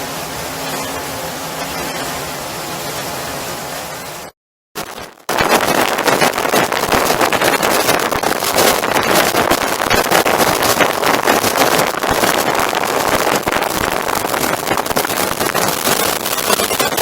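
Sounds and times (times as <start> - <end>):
wind buffeting microphone: 5.4 - 16.5.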